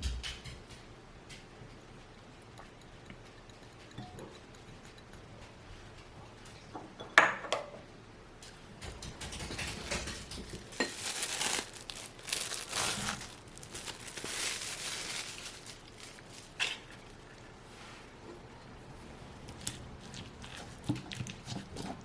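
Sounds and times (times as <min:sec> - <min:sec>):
dish or utensil clink: 0:03.4 - 0:04.4
scraping and rustling: 0:08.8 - 0:17.1.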